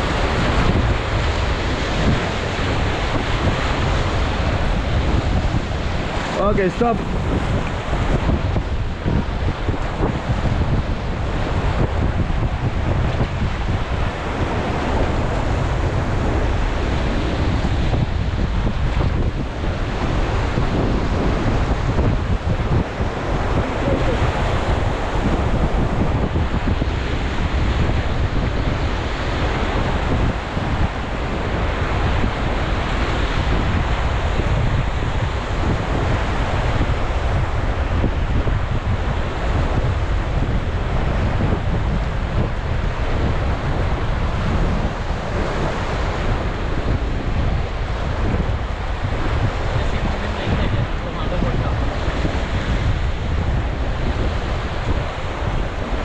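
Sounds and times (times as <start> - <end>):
whitewater river rapids rushing: 0.0 - 10.3, 22.4 - 26.8, 42.1 - 56.0
wind buffeting microphone: 0.0 - 56.0.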